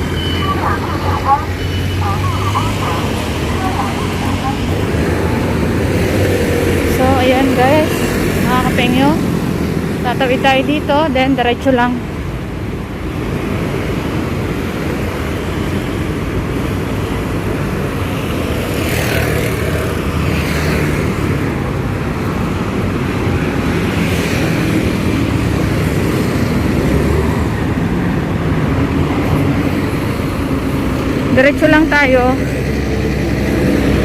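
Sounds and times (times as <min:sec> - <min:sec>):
louder vehicles passing: 0:00.0 - 0:34.0
traffic rumble on city road: 0:00.0 - 0:34.0.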